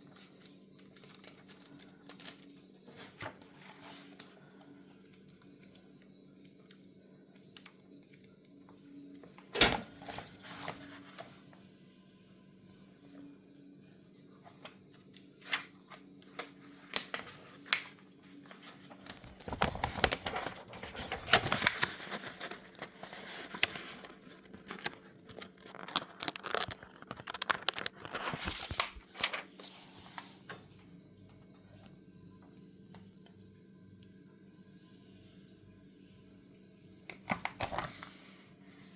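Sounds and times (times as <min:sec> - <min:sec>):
packaging tearing and crinkling: 0:19.1 - 0:29.4.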